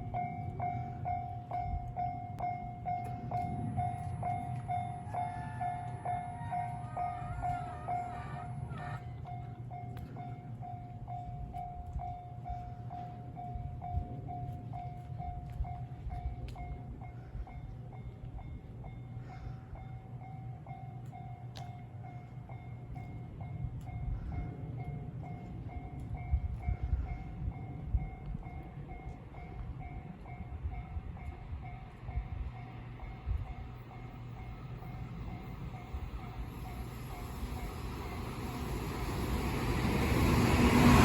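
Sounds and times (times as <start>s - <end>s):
level crossing alarm ringing: 0.0s - 9.6s
electric train rumbling: 0.0s - 41.0s
sharp clicks from train wheels: 21.0s - 41.0s.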